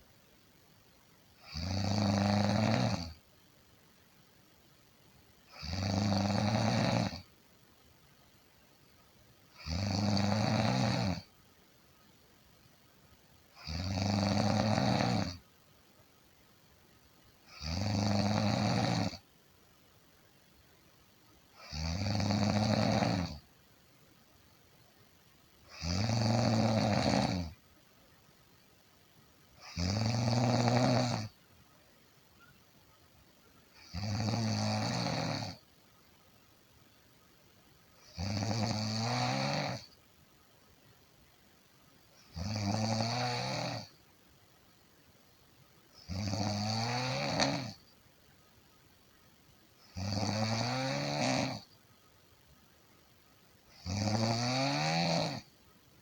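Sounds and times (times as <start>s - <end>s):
person snoring: 1.4s - 3.2s, 5.5s - 7.2s, 9.6s - 11.3s, 13.6s - 15.4s, 17.5s - 19.2s, 21.6s - 23.4s, 25.7s - 27.6s, 29.6s - 31.3s, 33.8s - 35.6s, 38.0s - 39.9s, 42.3s - 43.9s, 46.0s - 47.8s, 49.9s - 51.7s, 53.8s - 55.5s.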